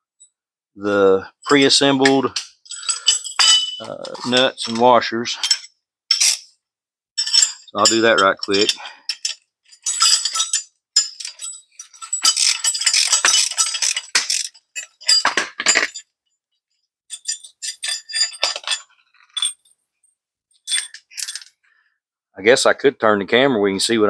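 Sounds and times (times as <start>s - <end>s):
metal nuts and washers clinking: 1.5s - 6.5s, 7.2s - 16.1s, 17.1s - 19.9s, 20.7s - 21.6s.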